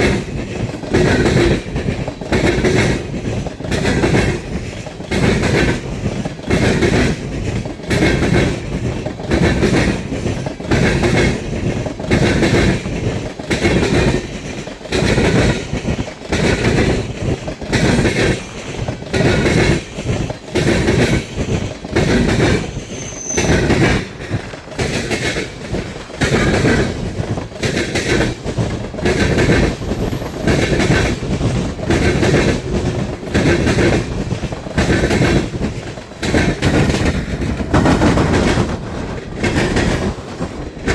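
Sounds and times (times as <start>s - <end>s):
train wheels clacking over rail joints: 0.0s - 40.9s
wheel squeal: 22.5s - 24.0s, 29.3s - 34.0s.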